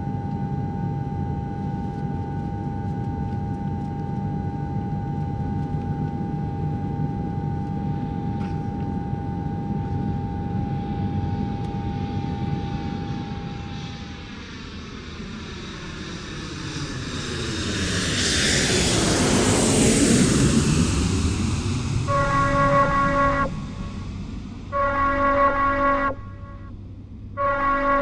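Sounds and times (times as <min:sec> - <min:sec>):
aircraft engines spooling up: 0:10.8 - 0:28.0
steady tone: 0:22.0 - 0:28.0.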